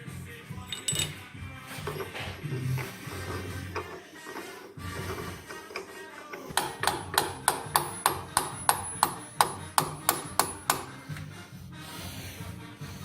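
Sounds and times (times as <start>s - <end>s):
background music: 0.0s - 13.0s
hammer striking steel: 6.5s - 11.0s.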